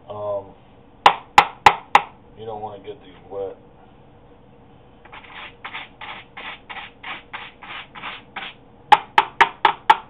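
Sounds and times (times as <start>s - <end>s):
brush scrubbing a filter: 5.1s - 8.6s.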